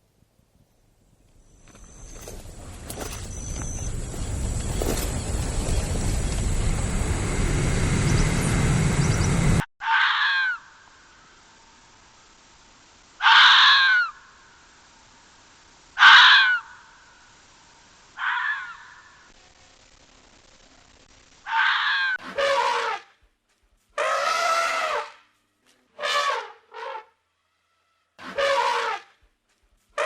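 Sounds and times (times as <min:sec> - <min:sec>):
loud rushing noise: 0:04.3 - 0:09.7
animal harsh calls: 0:09.8 - 0:10.8, 0:13.2 - 0:14.3, 0:16.0 - 0:16.9, 0:18.2 - 0:19.2, 0:21.4 - 0:23.0.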